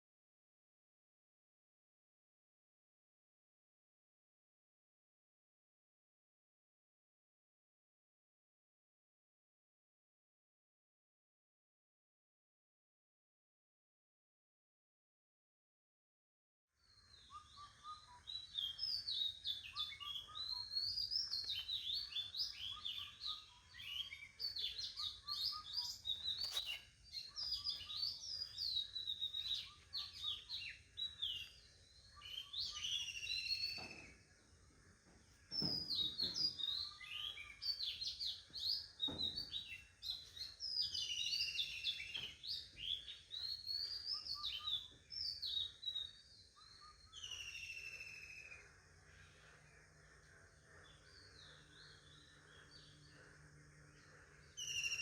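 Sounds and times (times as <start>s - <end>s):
songbirds chirping: 16.8s - 55.0s.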